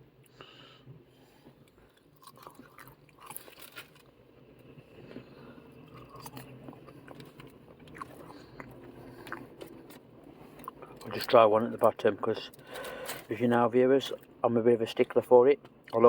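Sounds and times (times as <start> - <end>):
person chewing crunchy chips: 1.7 - 4.2, 4.9 - 11.4.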